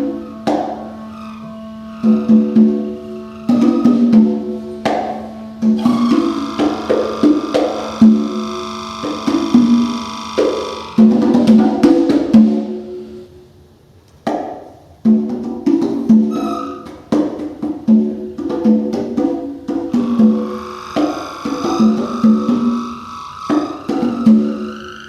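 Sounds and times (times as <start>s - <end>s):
held high tone: 0.0s - 11.3s, 16.3s - 16.9s, 19.9s - 25.0s
rapid struck pitched notes: 0.0s - 13.3s, 14.3s - 25.0s.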